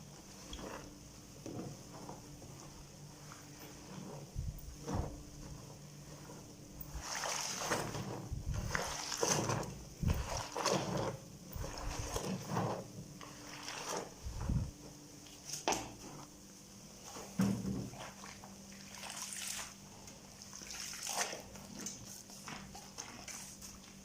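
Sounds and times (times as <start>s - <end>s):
water sloshing and splashing: 0.1s - 16.3s, 17.0s - 24.0s.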